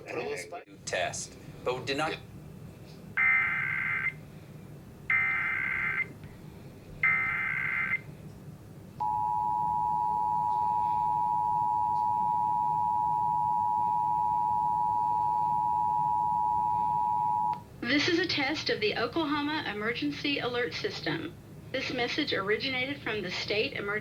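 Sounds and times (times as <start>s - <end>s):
two-tone attention signal: 9.0s - 17.6s.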